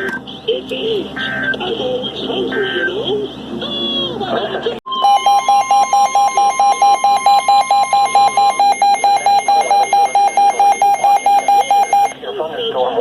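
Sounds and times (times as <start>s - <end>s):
rapid electronic beeping: 4.9s - 12.2s
steady alarm tone: 4.9s - 12.2s.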